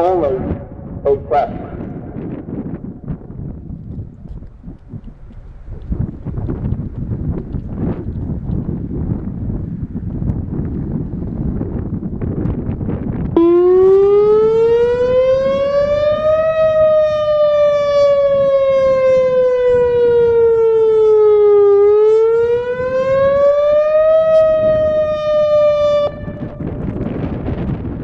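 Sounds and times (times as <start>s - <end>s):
warning siren wailing: 0.0s - 3.6s, 13.3s - 28.0s.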